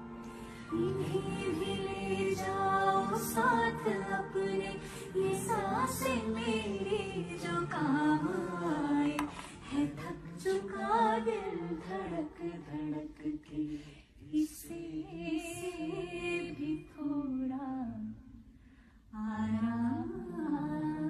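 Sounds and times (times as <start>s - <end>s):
woman singing slow melody: 0.2s - 18.3s.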